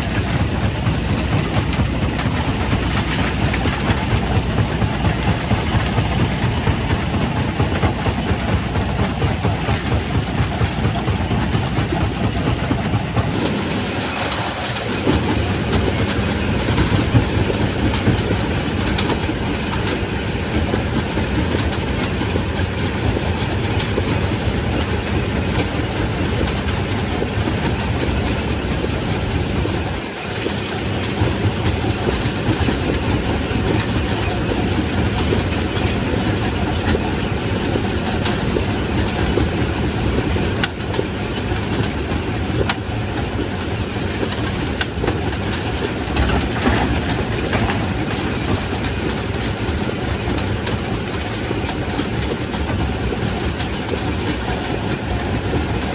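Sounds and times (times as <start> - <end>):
rock crusher rumbling: 0.0 - 23.5, 29.5 - 55.9.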